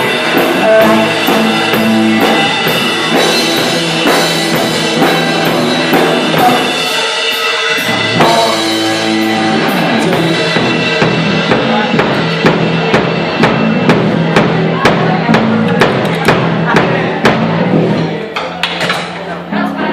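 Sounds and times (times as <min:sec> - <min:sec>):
drum kit: 0:00.0 - 0:19.9
rock band playing live: 0:00.0 - 0:19.9.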